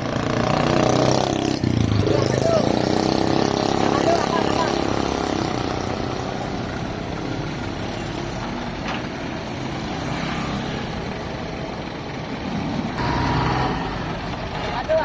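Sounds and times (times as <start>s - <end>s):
motor running: 13.0s - 14.4s.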